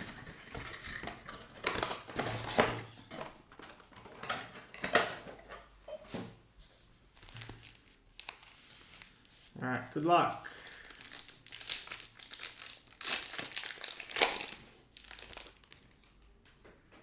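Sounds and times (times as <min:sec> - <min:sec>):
cardboard boxes clattering on table: 0:00.0 - 0:06.4.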